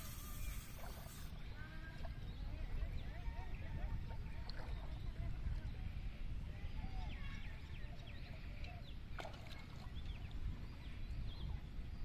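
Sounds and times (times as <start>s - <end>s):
birds chirping: 0.0s - 3.9s.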